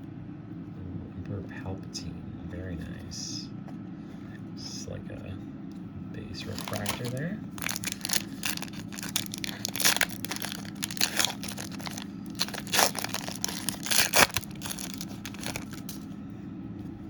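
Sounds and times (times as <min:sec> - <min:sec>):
foil wrapper crinkling: 0:06.4 - 0:16.1
foil wrapper ripping: 0:06.4 - 0:16.1.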